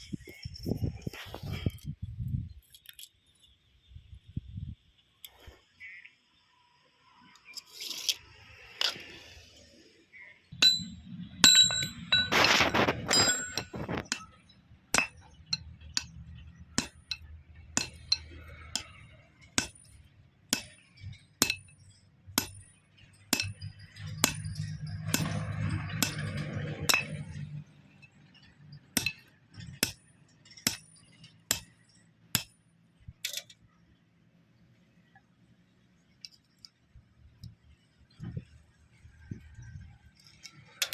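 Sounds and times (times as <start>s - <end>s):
metal striking iron bar: 10.6s - 28.2s, 29.0s - 32.6s.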